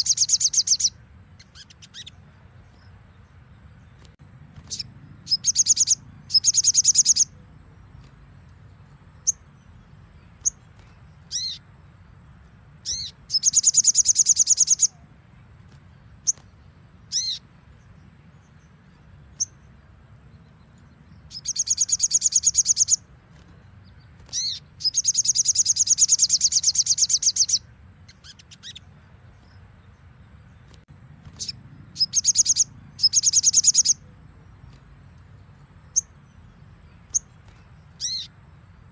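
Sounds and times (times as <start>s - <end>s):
bird sharp chirps: 0.0s - 3.0s, 3.9s - 7.4s, 9.2s - 11.7s, 12.8s - 15.1s, 15.8s - 17.5s, 20.8s - 29.6s, 30.6s - 34.9s, 35.8s - 38.4s
sunbird singing fast trills: 0.0s - 38.9s
bird sliding calls: 24.2s - 27.6s.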